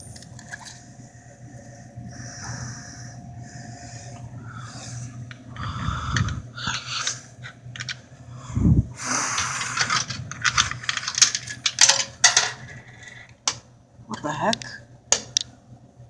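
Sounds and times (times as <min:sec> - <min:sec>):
coins clinking in vending machine: 0:00.0 - 0:00.9, 0:09.4 - 0:13.2.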